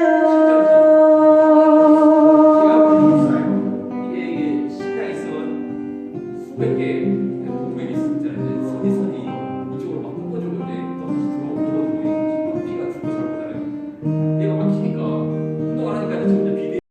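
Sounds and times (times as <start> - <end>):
person singing a long note: 0.0 - 3.9
strummed acoustic guitar: 0.0 - 16.8.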